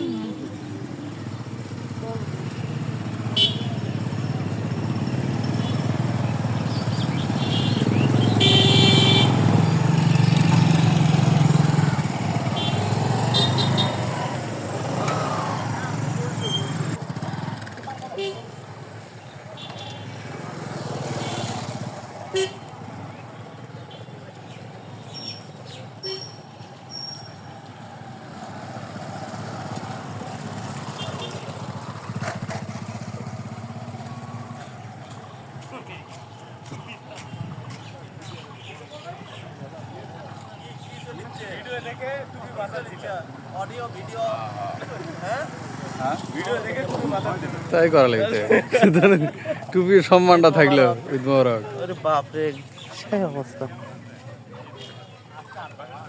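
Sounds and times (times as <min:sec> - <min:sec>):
motorcycle engine running: 0:00.0 - 0:23.9, 0:27.4 - 0:38.7.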